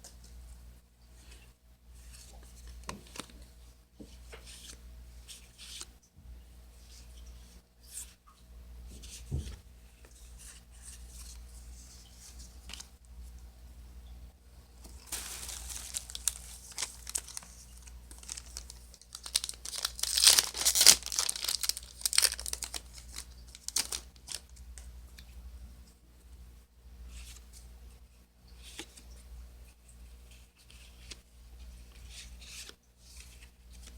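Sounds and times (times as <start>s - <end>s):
wrapper tearing and crinkling: 15.1s - 24.6s.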